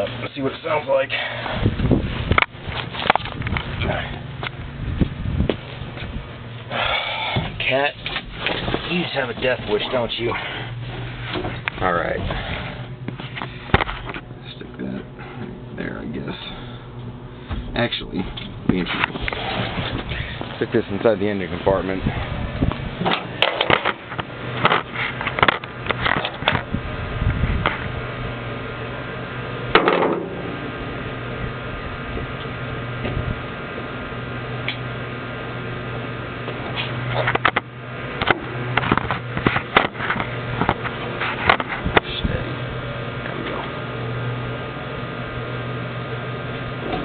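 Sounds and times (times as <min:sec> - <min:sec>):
engine idling: 0:00.0 - 0:47.0
knocks and clatters: 0:29.7 - 0:30.4, 0:36.6 - 0:42.1.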